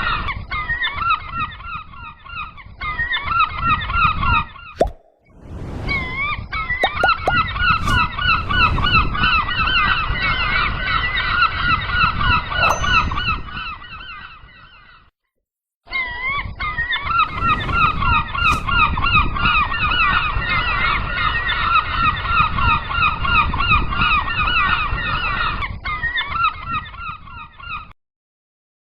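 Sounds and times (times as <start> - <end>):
low rumble: 4.8 - 6.4, 7.3 - 9.8.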